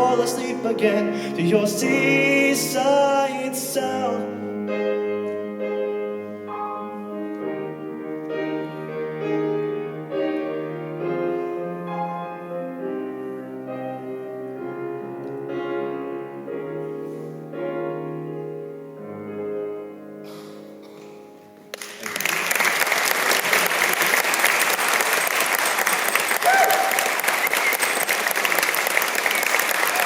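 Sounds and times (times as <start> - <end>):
piano chords and melody: 0.0 - 22.0.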